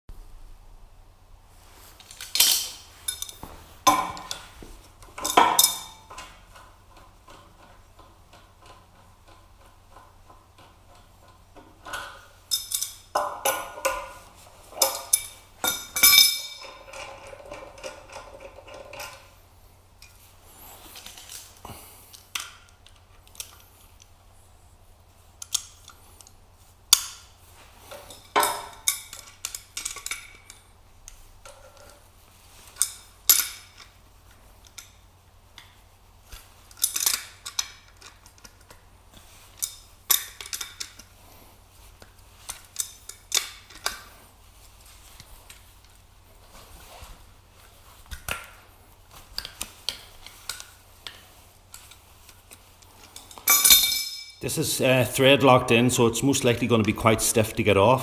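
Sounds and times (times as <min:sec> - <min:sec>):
faint low hum: 0:00.1 - 0:58.0
metal fittings clinking: 0:02.0 - 0:19.4, 0:27.9 - 0:30.7, 0:49.4 - 0:54.6.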